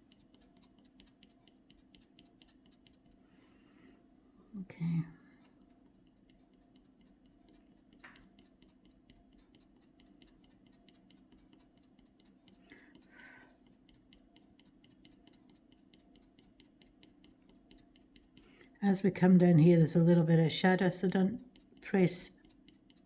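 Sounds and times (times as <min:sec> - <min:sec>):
scratch tool scraping board: 0:05.4 - 0:18.7.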